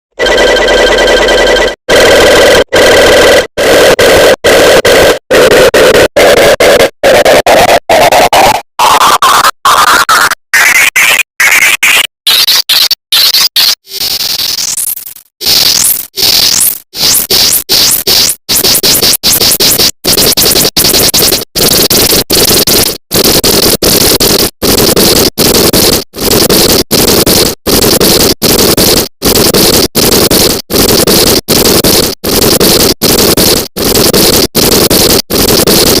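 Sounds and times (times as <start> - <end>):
distorted sneeze loop: 2.0 - 8.4.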